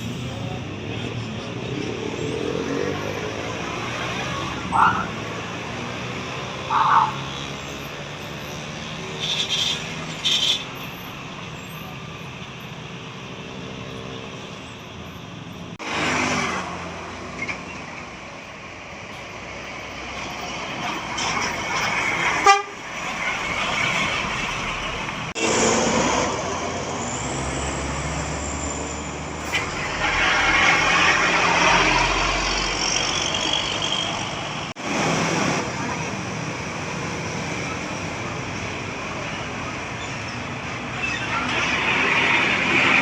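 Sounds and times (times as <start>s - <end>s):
buses passing by: 0.0s - 43.0s
bus air horn toots: 22.4s - 22.9s.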